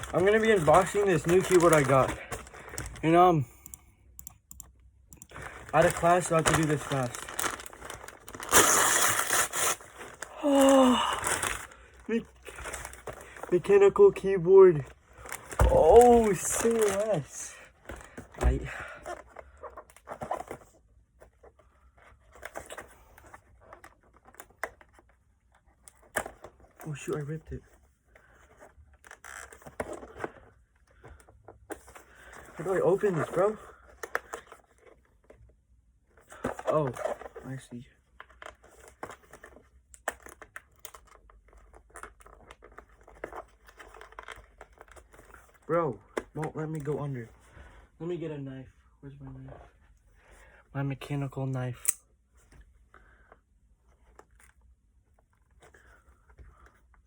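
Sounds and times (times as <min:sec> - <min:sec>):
packaging rustling and scraping: 0:00.0 - 0:03.2, 0:05.3 - 0:25.2, 0:36.2 - 0:45.8
cardboard and plastic crinkling: 0:00.0 - 0:03.3, 0:05.3 - 0:35.5, 0:36.1 - 0:47.3.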